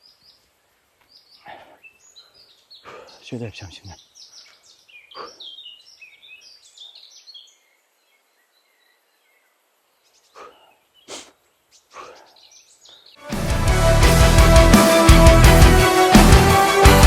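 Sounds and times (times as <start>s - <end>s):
small birds chirping: 0.0s - 13.2s
loud music: 13.2s - 17.0s.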